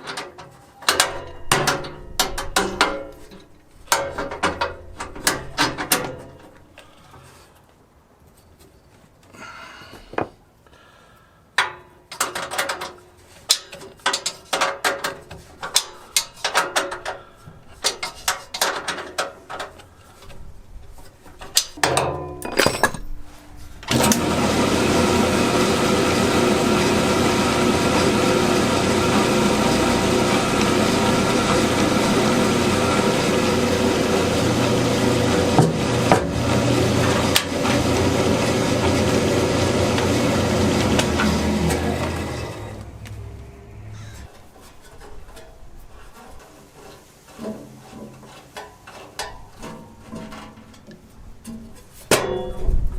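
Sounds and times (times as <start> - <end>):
bandsaw running: 23.9 - 44.2.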